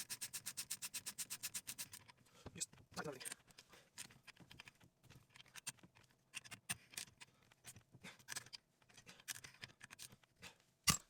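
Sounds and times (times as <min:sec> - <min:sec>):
small clicks of parts: 0:03.0 - 0:11.0.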